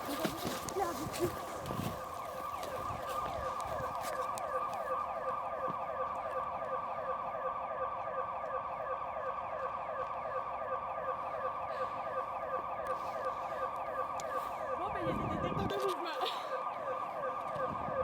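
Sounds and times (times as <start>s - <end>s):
security alarm siren sweeping: 0.0s - 18.0s.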